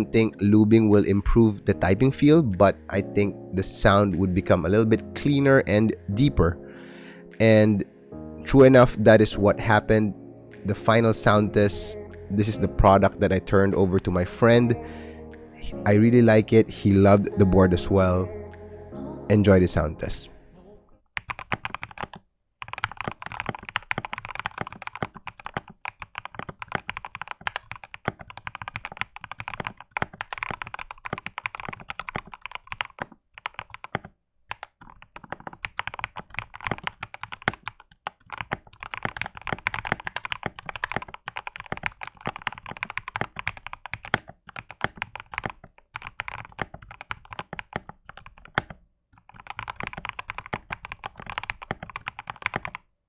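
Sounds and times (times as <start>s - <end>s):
mechanical keyboard typing thock: 21.2s - 52.8s.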